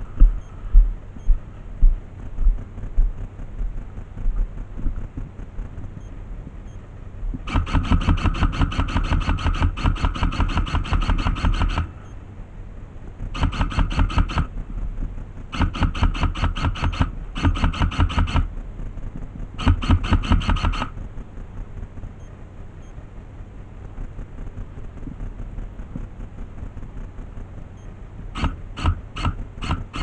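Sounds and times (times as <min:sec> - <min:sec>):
airsoft gun automatic bursts: 0:07.5 - 0:12.1, 0:13.2 - 0:14.6, 0:15.5 - 0:18.6, 0:19.6 - 0:21.0, 0:28.3 - 0:30.0.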